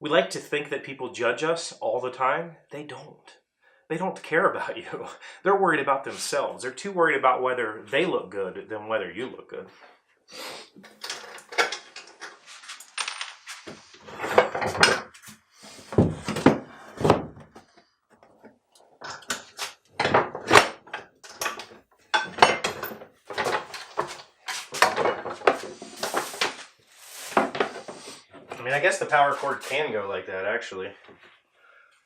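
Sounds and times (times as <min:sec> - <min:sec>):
wooden parts knocking and clattering: 0:10.8 - 0:26.7, 0:27.3 - 0:28.7.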